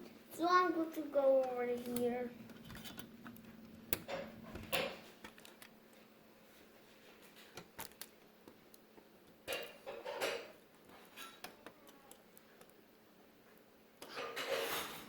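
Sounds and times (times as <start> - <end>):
scraping and handling: 1.4 - 8.6, 14.0 - 15.0.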